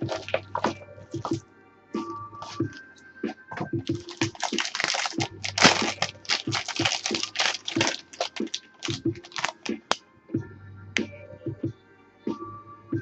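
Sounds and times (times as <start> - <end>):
packaging crinkling: 0.0 - 0.7, 3.8 - 10.0
background music: 0.0 - 13.0.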